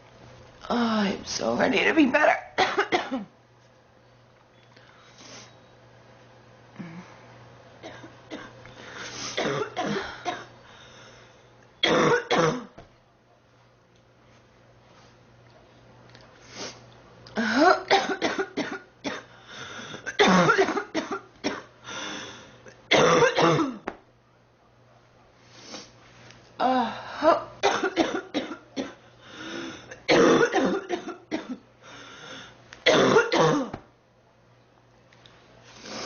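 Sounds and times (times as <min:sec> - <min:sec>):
girl coughing: 0:02.6 - 0:03.3, 0:09.4 - 0:10.5, 0:11.8 - 0:12.8, 0:17.4 - 0:19.3, 0:20.1 - 0:21.7, 0:22.9 - 0:23.8, 0:27.3 - 0:29.0, 0:30.0 - 0:31.6, 0:32.9 - 0:33.8.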